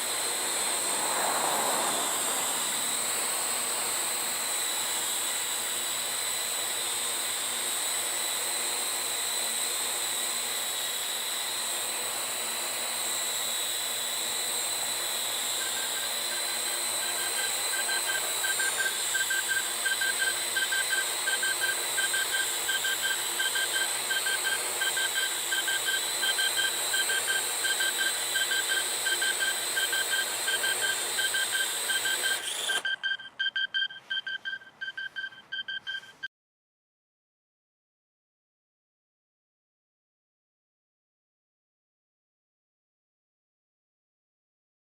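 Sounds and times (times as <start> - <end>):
drone rotors whirring: 0.0 - 35.4
rapid repeated beeping: 15.6 - 36.3.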